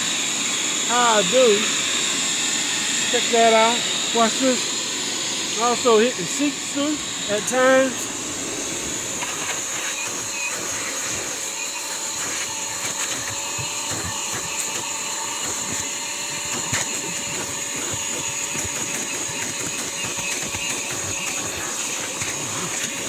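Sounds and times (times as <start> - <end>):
shop vacuum running: 0.0 - 23.0.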